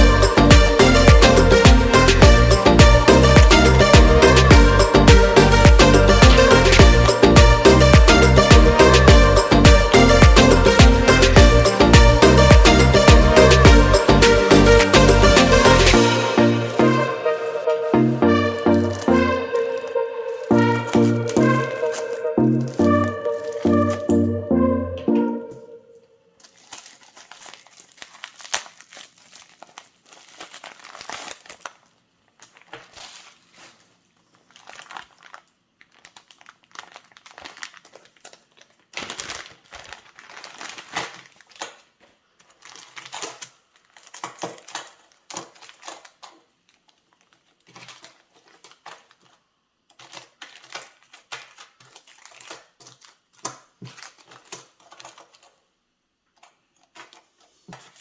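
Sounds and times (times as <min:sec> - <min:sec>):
plastic packaging crinkling: 0:18.9 - 0:23.9, 0:25.9 - 0:58.0.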